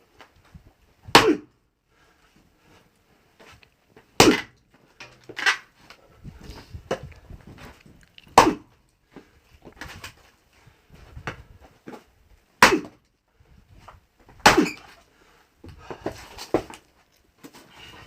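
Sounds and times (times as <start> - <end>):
axe chopping into log: 1.1 - 1.5, 4.2 - 4.6, 8.4 - 8.6, 12.6 - 13.0, 14.4 - 14.9.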